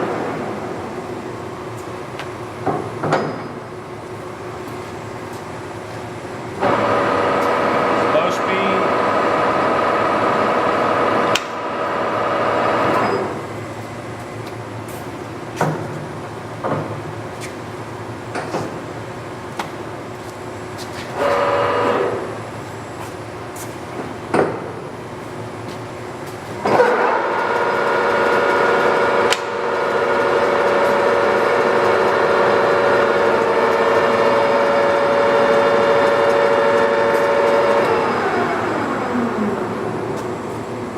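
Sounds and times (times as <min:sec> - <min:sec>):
lathe gear whine: 0:03.4 - 0:15.4, 0:20.0 - 0:23.6, 0:26.6 - 0:40.9.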